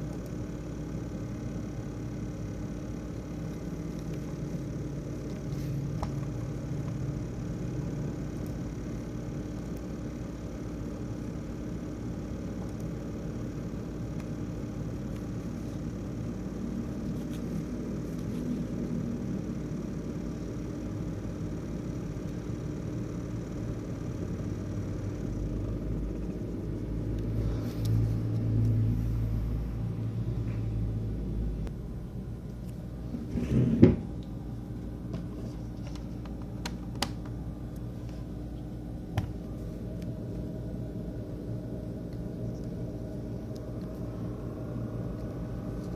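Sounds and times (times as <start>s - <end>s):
laptop fan buzzing hum: 0.0s - 45.9s.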